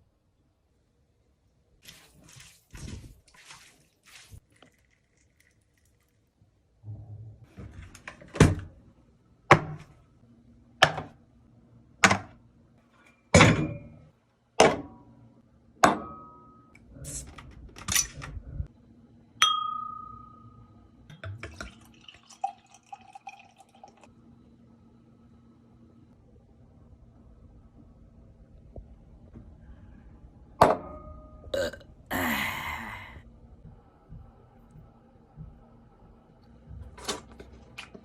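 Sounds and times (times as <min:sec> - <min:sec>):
ringing clink: 0:19.4 - 0:20.7.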